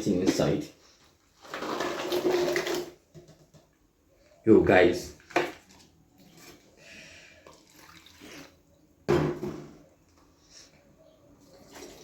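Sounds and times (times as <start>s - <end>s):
water splashing into blender jar: 7.4s - 8.6s.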